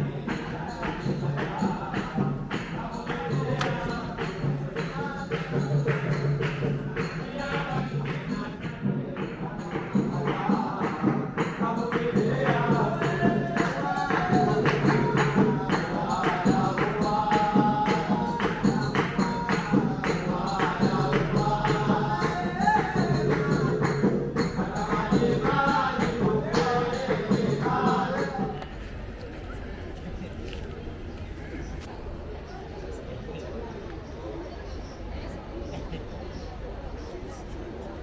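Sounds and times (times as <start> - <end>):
quick percussion beat: 0.0 - 28.6
music with singing voices: 0.0 - 29.2.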